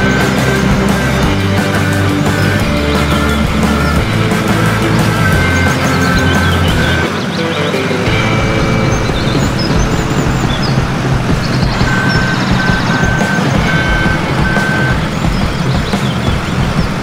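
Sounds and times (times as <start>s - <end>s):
reversing alarm beeping: 0.0s - 7.2s, 8.1s - 15.7s
birds chirping faintly: 0.0s - 17.0s
diesel engine running: 0.0s - 17.0s.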